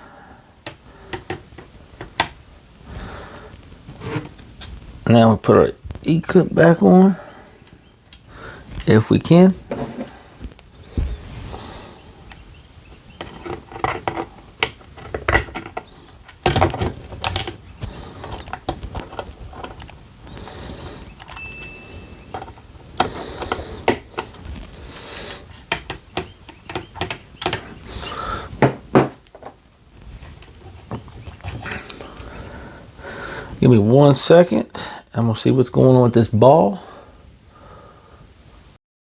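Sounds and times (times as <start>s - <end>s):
small hand tools clicking and tapping: 0.6s - 2.4s, 25.7s - 27.7s.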